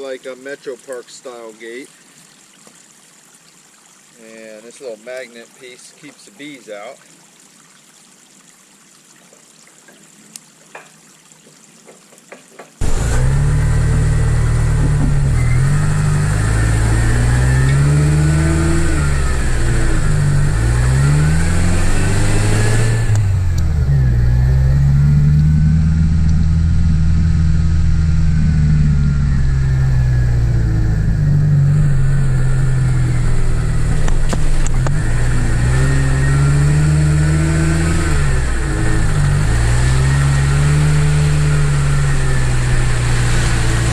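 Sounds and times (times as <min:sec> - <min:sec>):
vehicle engine revving: 0:12.8 - 0:43.9.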